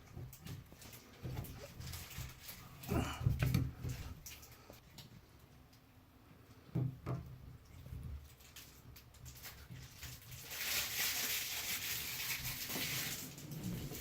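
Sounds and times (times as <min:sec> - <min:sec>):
water running: 0:00.0 - 0:04.7, 0:09.7 - 0:14.0.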